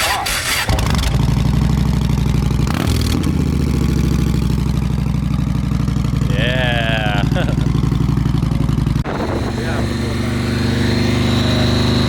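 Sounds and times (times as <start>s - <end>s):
motorcycle engine idling: 0.4s - 12.0s.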